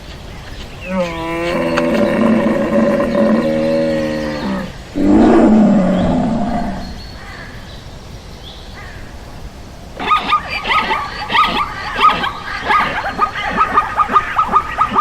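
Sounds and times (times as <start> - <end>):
long steady animal call: 0.7 - 7.7, 10.0 - 15.0
loud animal roar: 0.9 - 7.0.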